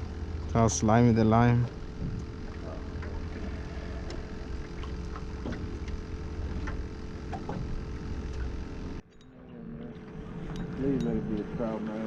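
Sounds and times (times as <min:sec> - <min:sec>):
water around a boat: 0:00.0 - 0:09.0
steady low hum: 0:00.0 - 0:12.0.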